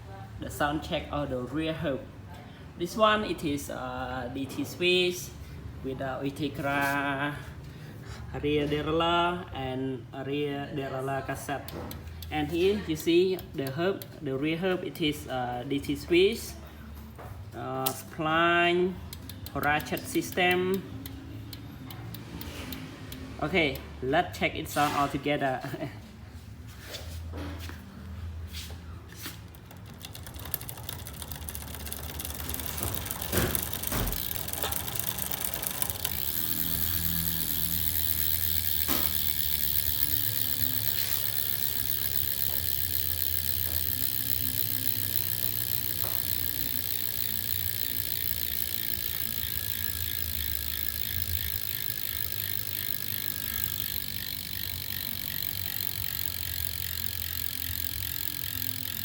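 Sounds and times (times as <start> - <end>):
bicycle hub ratchet buzzing: 2.8 - 25.9, 29.1 - 59.0
bicycle hub clicks: 11.2 - 25.6, 29.3 - 59.0.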